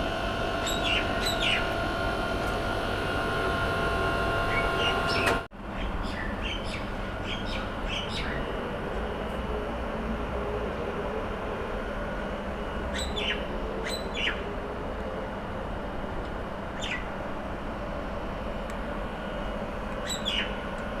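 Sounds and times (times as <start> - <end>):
steady tonal hum: 0.0 - 21.0
small birds chirping: 0.6 - 1.7, 4.5 - 8.5, 12.9 - 14.4, 16.8 - 17.1, 20.0 - 20.6.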